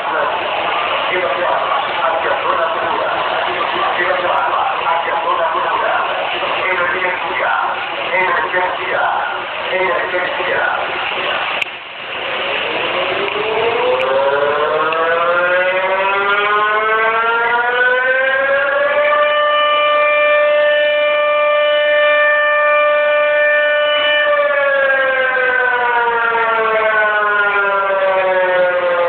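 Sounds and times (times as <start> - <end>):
warning siren wailing: 12.4 - 29.0.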